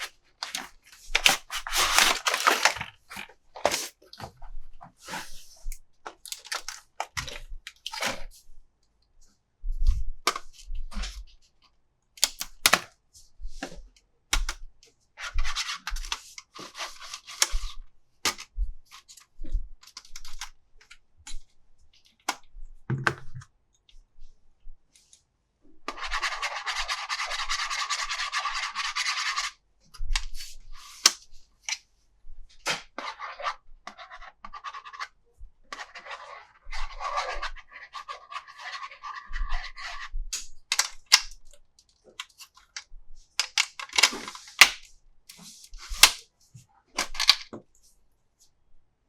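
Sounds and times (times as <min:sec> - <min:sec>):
plastic scraping: 0:00.0 - 0:04.2
plastic clicks and rustles: 0:00.0 - 0:04.4, 0:06.0 - 0:08.2, 0:11.6 - 0:13.0, 0:40.3 - 0:46.2.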